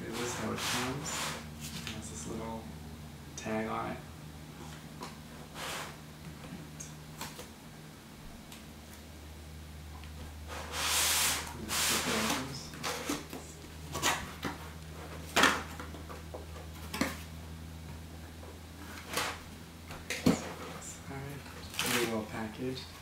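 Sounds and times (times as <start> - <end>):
low steady hum: 0.0 - 23.0
cardboard sliding rustle: 0.1 - 1.9, 10.5 - 13.3.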